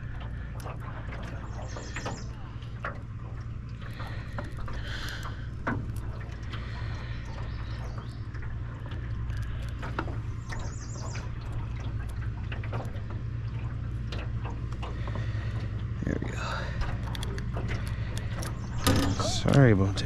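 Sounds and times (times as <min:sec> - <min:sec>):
steady low hum: 0:00.0 - 0:20.0
small clicks and knocks: 0:16.8 - 0:19.6.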